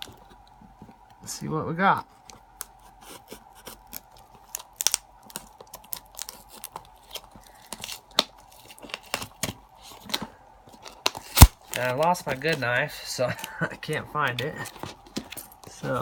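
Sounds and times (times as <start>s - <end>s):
faint steady hum: 0.0s - 16.0s
cardboard package being handled: 2.1s - 16.0s
tape tearing: 2.6s - 10.2s, 10.8s - 12.6s.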